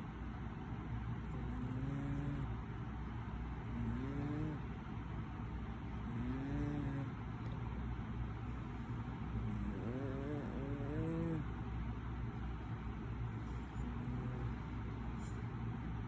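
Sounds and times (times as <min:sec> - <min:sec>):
steady low hum: 0:00.0 - 0:16.0
cat snoring: 0:01.3 - 0:02.6, 0:03.7 - 0:04.7, 0:06.0 - 0:07.2, 0:09.3 - 0:11.5, 0:13.4 - 0:15.4.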